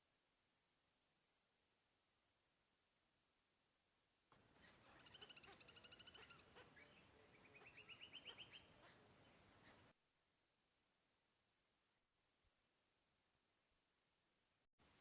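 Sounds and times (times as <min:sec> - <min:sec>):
faint outdoor background noise: 0:00.0 - 0:15.0
bird trilling: 0:04.6 - 0:09.0.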